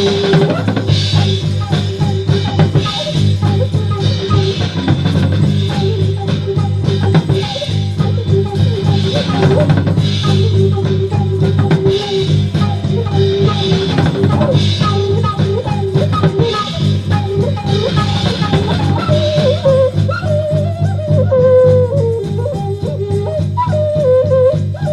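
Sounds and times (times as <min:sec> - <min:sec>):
drum kit beat: 0:00.0 - 0:24.9
sustained bass: 0:00.0 - 0:24.9.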